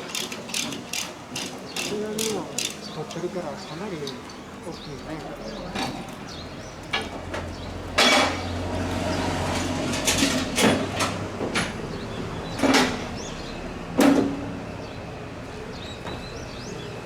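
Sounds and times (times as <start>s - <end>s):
heavy ringing knocks and clanks: 6.9s - 8.7s, 9.6s - 15.0s.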